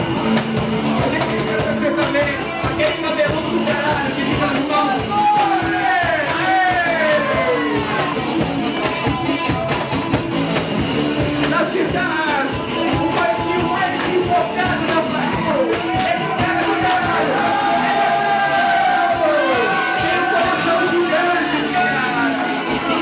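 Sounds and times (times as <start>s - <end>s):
drums striking: 0.0s - 23.0s
live rock band: 0.0s - 23.0s.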